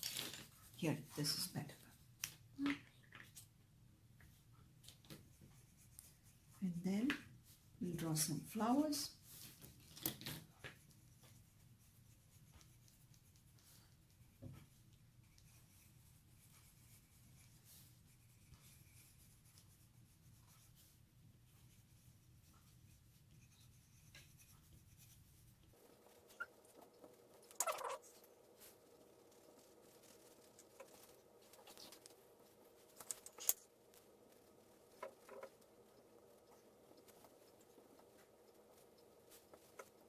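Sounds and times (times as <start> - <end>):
pencils scratching on paper: 0.0 - 1.9, 4.9 - 7.3, 7.9 - 40.0.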